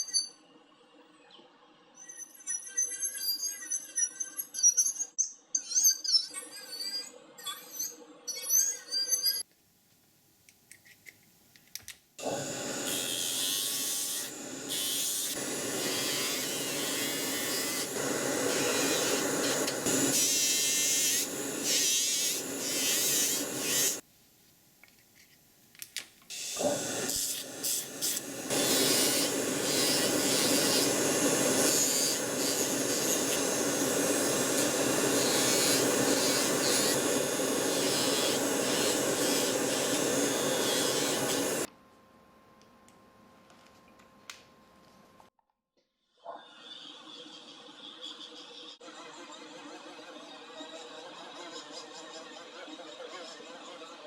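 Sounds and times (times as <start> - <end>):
small power tool running: 12.2 - 24.0, 26.3 - 41.7.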